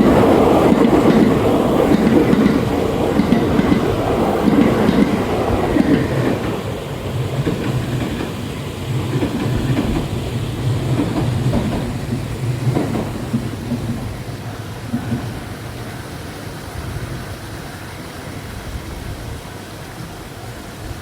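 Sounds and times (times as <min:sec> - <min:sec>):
rail joint clatter: 0:00.0 - 0:15.9
electric train passing: 0:00.0 - 0:21.0.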